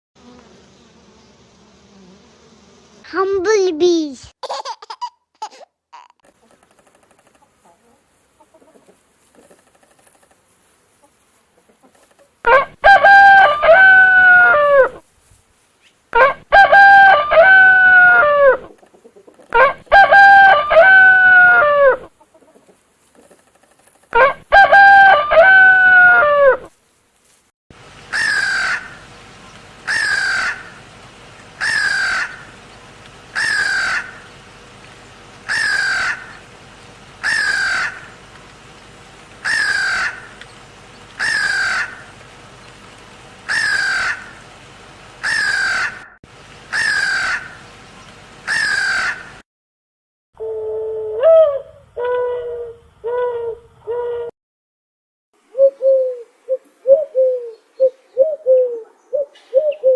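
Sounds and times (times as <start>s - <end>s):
rooster crowing: 12.5s - 15.0s, 16.2s - 18.6s, 19.6s - 22.1s, 24.2s - 26.7s, 28.1s - 29.0s, 29.9s - 30.8s, 31.6s - 32.5s, 33.4s - 34.3s, 35.5s - 36.4s, 37.2s - 38.1s, 39.4s - 40.3s, 41.2s - 42.0s, 45.2s - 46.1s, 46.7s - 47.6s
bird calling: 28.0s - 30.8s, 31.6s - 32.8s, 33.4s - 34.3s, 35.4s - 38.2s, 39.4s - 42.1s, 43.5s - 44.4s, 55.5s - 59.9s.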